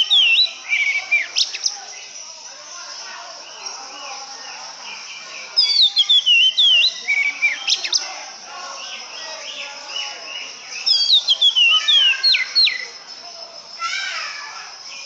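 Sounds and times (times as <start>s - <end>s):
bird singing whistled phrases: 0.0s - 2.1s, 5.5s - 8.1s, 8.8s - 13.0s.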